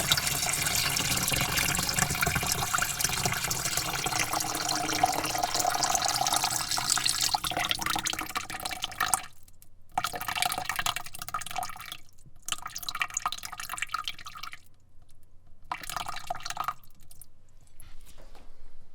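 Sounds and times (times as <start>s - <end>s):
water pouring into bucket: 0.0s - 9.3s.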